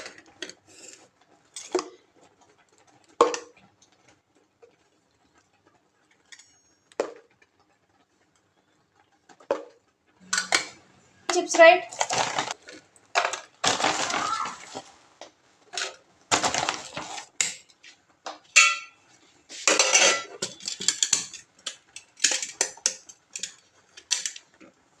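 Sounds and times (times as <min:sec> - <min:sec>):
utensils and dishes clattering: 0:11.9 - 0:14.9, 0:15.7 - 0:17.7, 0:18.6 - 0:24.4.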